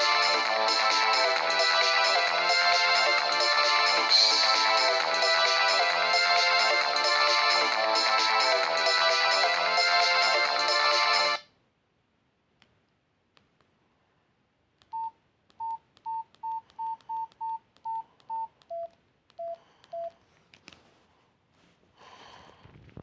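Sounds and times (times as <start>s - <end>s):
phone key beeps: 14.9s - 20.2s.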